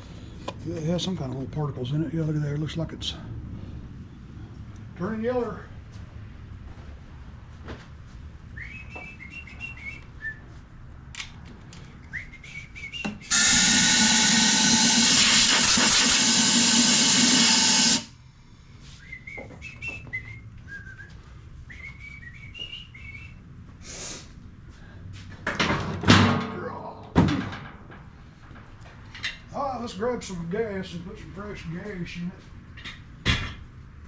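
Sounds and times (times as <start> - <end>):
loud steady hiss: 13.3 - 18.2.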